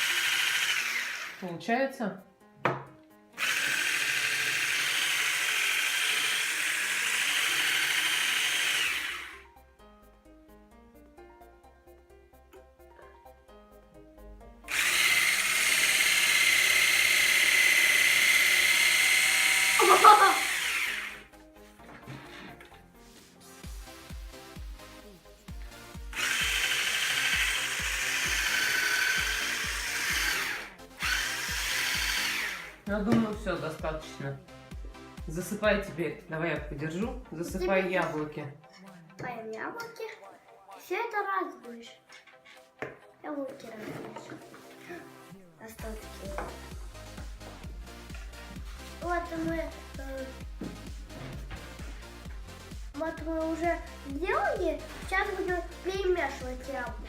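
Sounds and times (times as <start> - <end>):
electric hand mixer running: 0.0 - 1.5, 3.4 - 9.5, 14.7 - 21.3, 25.9 - 33.9
light background music: 0.0 - 57.0.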